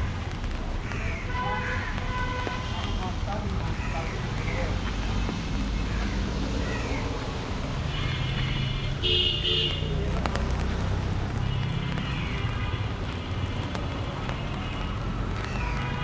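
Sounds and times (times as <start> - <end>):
vehicle engines running: 0.0 - 16.0
vehicle horn honking: 8.0 - 10.0.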